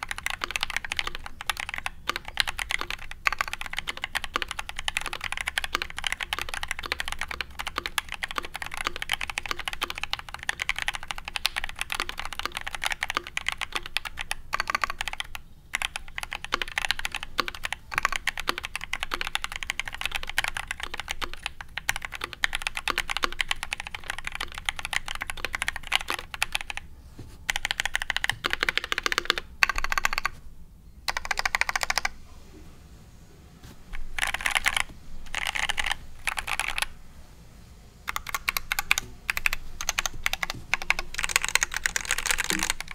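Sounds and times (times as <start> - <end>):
mechanical keyboard typing: 0.0 - 26.8, 27.5 - 30.4, 31.1 - 32.2, 33.9 - 36.9, 38.1 - 42.9.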